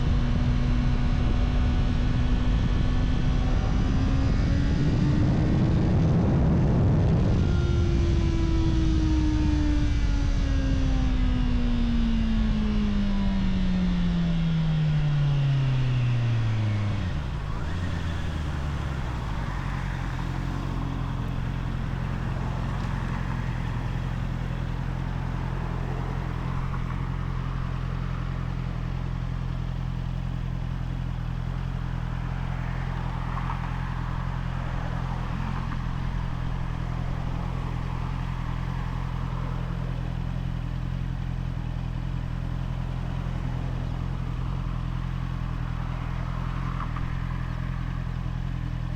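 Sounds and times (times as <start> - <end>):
motorcycle engine idling: 15.7 - 48.9.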